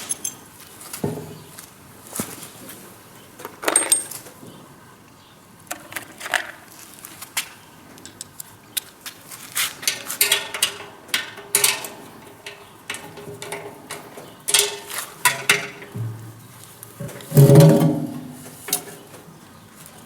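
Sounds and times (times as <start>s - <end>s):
metallic clicks and knocks: 9.8s - 16.4s.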